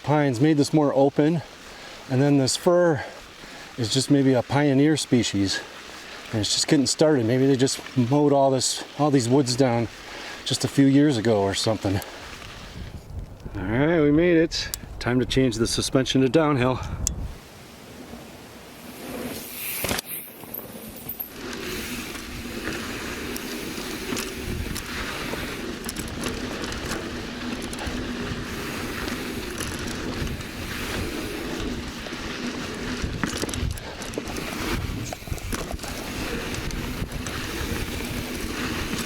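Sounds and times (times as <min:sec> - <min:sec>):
tyre and wind noise: 0:03.2 - 0:39.0
bike rattling over bumps: 0:18.8 - 0:39.0.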